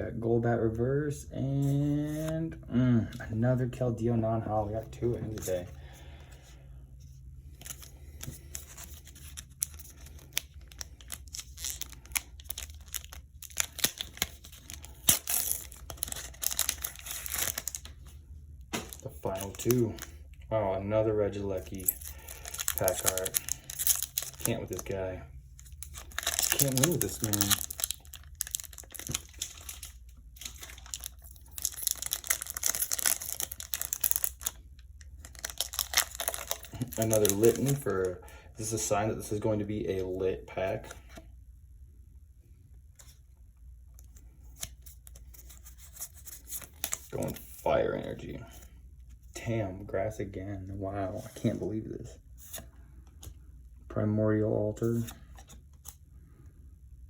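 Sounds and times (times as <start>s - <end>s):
cards clicking and rustling: 7.5s - 18.1s, 18.7s - 20.2s, 21.6s - 25.0s, 25.6s - 38.1s
foil wrapper crinkling and tearing: 7.5s - 18.2s, 18.8s - 20.2s, 21.6s - 25.0s, 25.6s - 38.2s.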